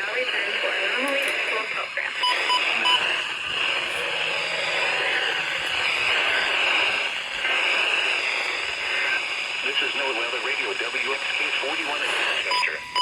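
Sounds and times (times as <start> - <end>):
radio static hiss: 0.0 - 13.0
short beeps: 2.2 - 3.4, 12.5 - 13.0.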